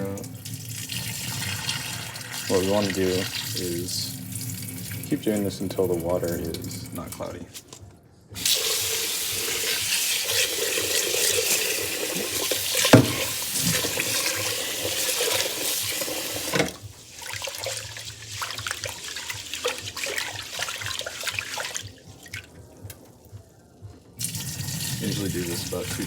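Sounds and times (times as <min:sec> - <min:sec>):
tap running water into pot: 0:00.0 - 0:07.3, 0:08.4 - 0:23.1, 0:24.2 - 0:26.0
water and rice sloshing: 0:09.6 - 0:23.1.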